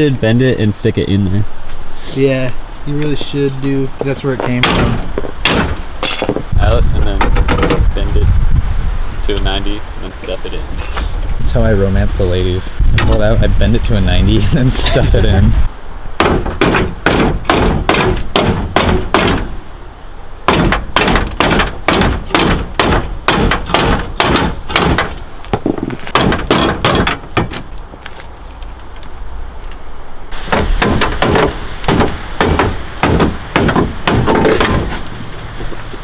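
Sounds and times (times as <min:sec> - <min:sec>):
sledgehammer striking sheet metal: 0:04.6 - 0:06.5, 0:16.2 - 0:19.6, 0:20.5 - 0:27.5, 0:30.4 - 0:34.9.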